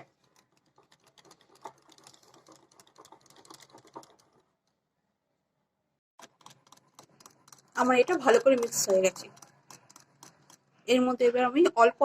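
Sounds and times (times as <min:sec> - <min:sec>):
utensil beating batter in bowl: 0:00.0 - 0:04.6, 0:06.2 - 0:11.3.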